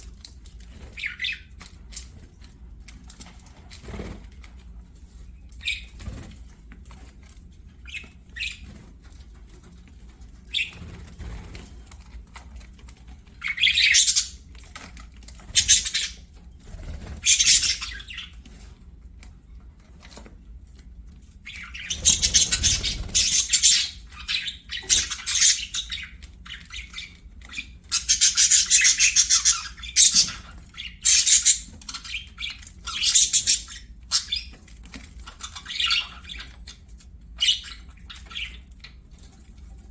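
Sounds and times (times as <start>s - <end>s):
budgerigars chattering and chirping: 0.8s - 1.5s, 5.6s - 6.1s, 7.8s - 8.7s, 10.5s - 10.8s, 13.3s - 14.4s, 15.3s - 18.4s, 21.4s - 39.1s.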